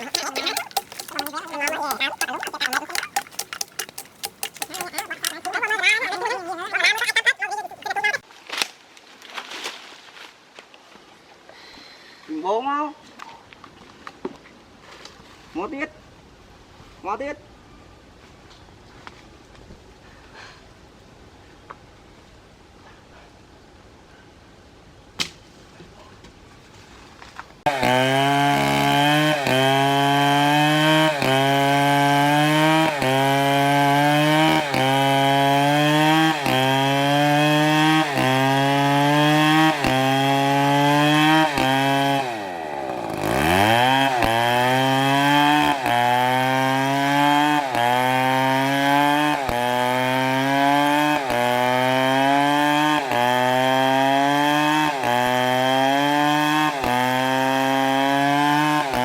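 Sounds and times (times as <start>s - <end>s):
chainsaw cutting wood: 0.0s - 6.3s, 27.7s - 59.0s.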